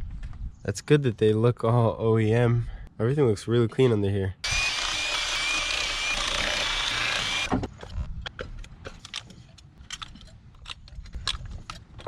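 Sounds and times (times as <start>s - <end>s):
power drill whining: 4.4s - 7.5s
tools clicking and knocking: 7.3s - 12.0s.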